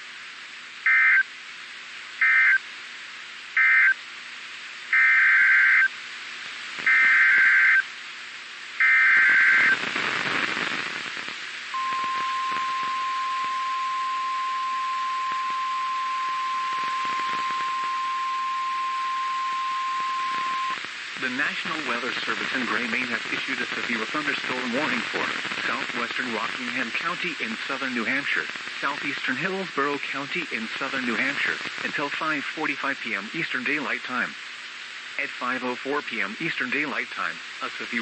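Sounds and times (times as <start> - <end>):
radio hiss: 0.0 - 38.0
data bursts: 8.8 - 10.6, 11.8 - 21.4.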